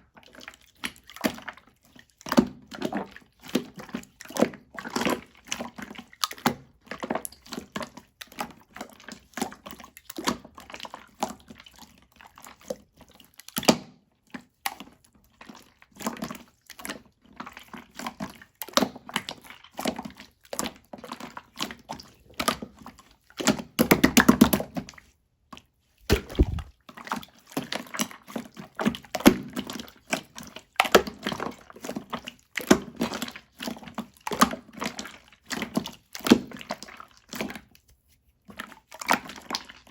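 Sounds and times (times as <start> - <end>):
dull thump: 26.1 - 26.7
hands squishing slime: 26.1 - 26.7
wet clicks and pops: 26.1 - 26.7.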